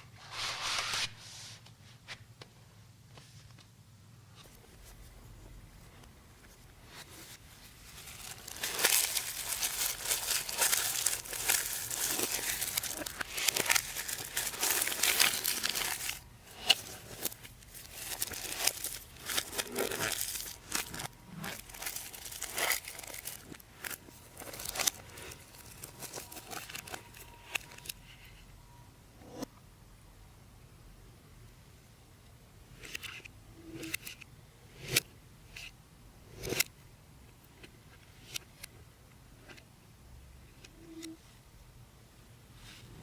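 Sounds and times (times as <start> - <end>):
packaging wrap crinkling: 6.9 - 28.0.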